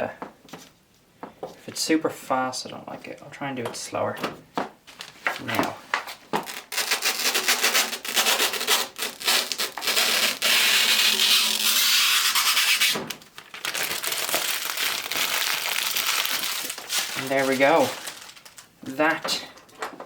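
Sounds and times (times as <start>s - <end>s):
plastic film peeling off: 6.4s - 18.7s.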